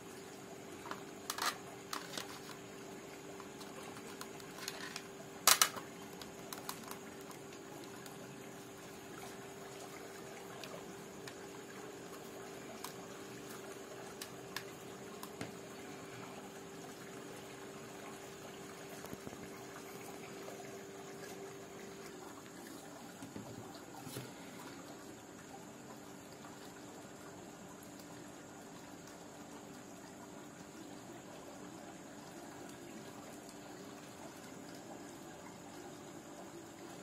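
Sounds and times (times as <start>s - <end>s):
constant high whine: 0.0s - 28.5s
faint room noise hiss: 0.0s - 37.0s.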